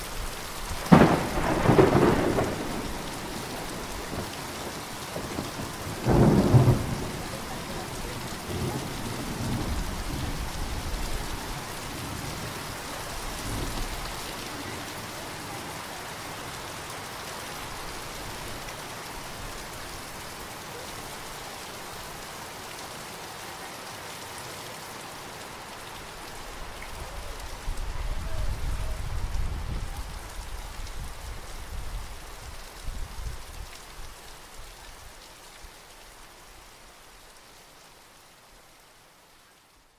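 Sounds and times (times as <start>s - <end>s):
steady rain falling: 0.0s - 39.9s
thunder rumbling: 0.7s - 15.7s, 26.6s - 32.2s.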